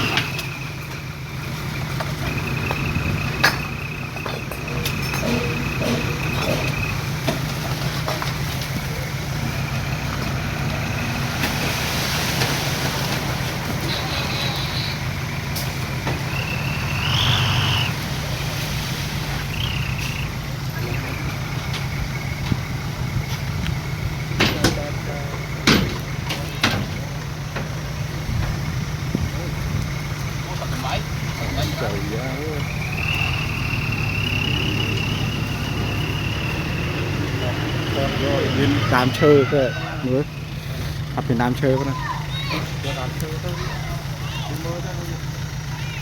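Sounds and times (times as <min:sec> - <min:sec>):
diesel machinery engine drone: 0:00.0 - 0:46.0
metal clanks: 0:02.0 - 0:08.9, 0:24.2 - 0:27.8
short high squeals: 0:13.7 - 0:15.4, 0:16.2 - 0:21.3.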